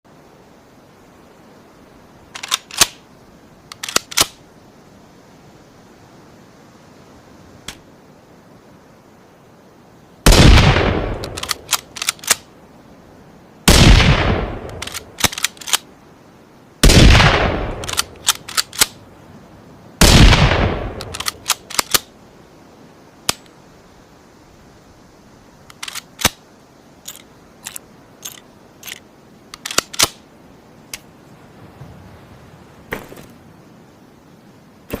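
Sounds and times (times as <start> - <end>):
rifle bolt metallic clicks: 2.3 - 3.0, 3.7 - 4.4, 11.1 - 12.5, 14.6 - 15.9, 17.7 - 19.0, 21.0 - 22.1, 25.7 - 26.4, 27.0 - 30.2
rifle shots: 10.3 - 12.4, 13.7 - 15.8, 16.8 - 19.0, 20.0 - 22.0.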